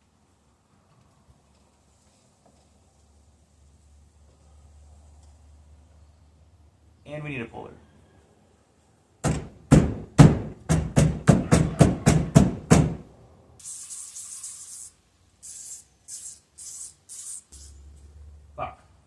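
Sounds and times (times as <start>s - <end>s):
heavy knocks on steering wheel: 9.2s - 13.0s
hissing bursts: 13.6s - 18.2s.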